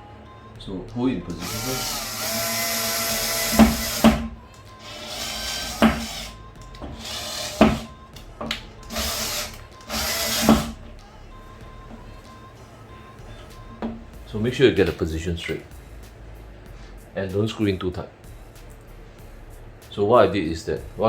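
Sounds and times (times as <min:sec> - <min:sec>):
cordless drill driving screws: 0:01.3 - 0:10.8
screw seating click: 0:02.3 - 0:10.8.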